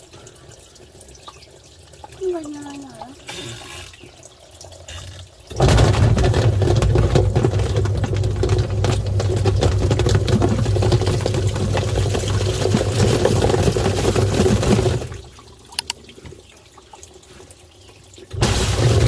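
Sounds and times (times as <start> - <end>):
plastic toys rattling in drum: 5.5 - 15.2, 18.4 - 19.0.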